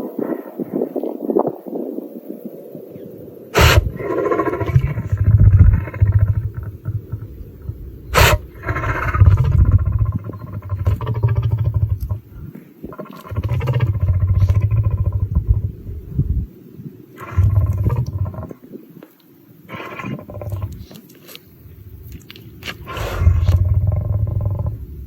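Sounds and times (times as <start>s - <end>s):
lion sneezing: 3.6s - 7.4s, 8.1s - 12.2s, 22.6s - 24.4s
lion rumbling: 3.6s - 16.5s, 17.1s - 18.7s, 19.7s - 21.2s, 22.0s - 25.0s.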